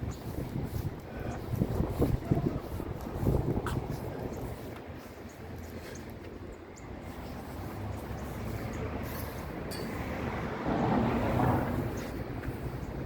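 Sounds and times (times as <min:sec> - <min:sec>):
traffic rumble: 0:00.0 - 0:13.0
vehicle passing: 0:04.4 - 0:13.0.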